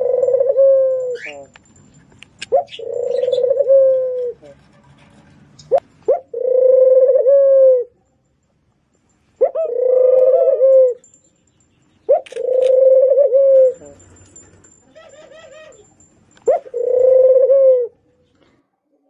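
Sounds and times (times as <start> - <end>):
pigeon cooing: 0.0 - 1.6, 2.5 - 4.6, 5.7 - 8.0, 9.4 - 11.1, 12.1 - 18.0.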